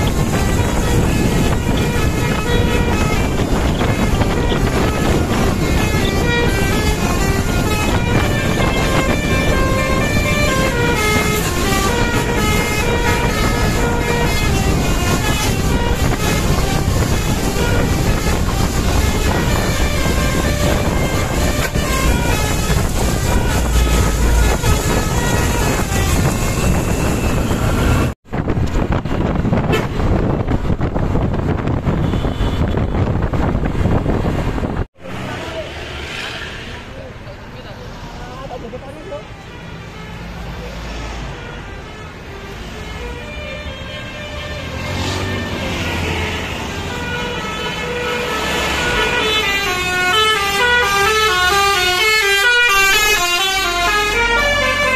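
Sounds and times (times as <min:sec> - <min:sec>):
musical bus horn melody: 0:00.0 - 0:28.2, 0:31.9 - 0:33.1, 0:39.2 - 0:54.9
wind buffeting microphone: 0:00.0 - 0:35.3
passing vehicle engine and tyres: 0:00.0 - 0:54.9.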